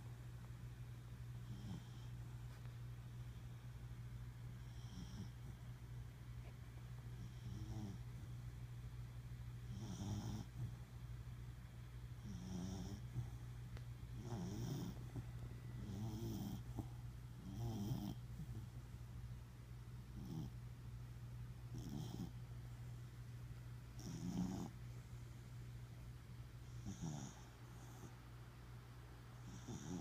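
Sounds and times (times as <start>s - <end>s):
steady low hum: 0.0s - 30.0s
dog snoring: 1.4s - 2.6s, 4.6s - 5.7s, 7.1s - 8.4s, 9.6s - 10.8s, 12.2s - 13.5s, 14.1s - 18.7s, 20.1s - 20.6s, 21.7s - 22.4s, 23.9s - 24.8s, 26.6s - 28.2s, 29.4s - 30.0s.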